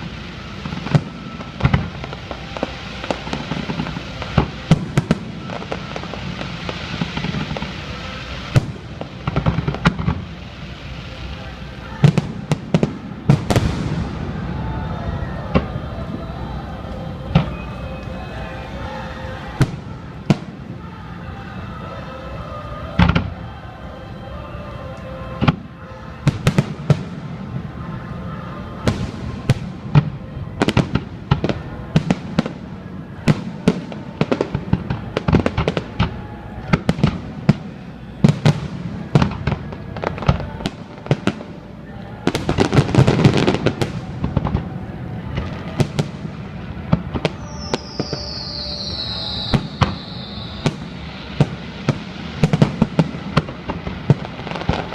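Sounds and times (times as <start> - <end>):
fireworks shells bursting: 47.2 - 54.9.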